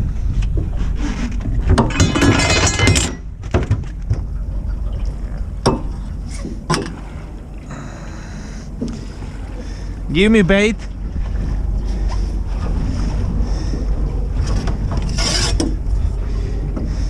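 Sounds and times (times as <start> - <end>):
wind on microphone: 0.0 - 2.2, 3.1 - 17.0
gear clattering and clinking: 1.6 - 6.1.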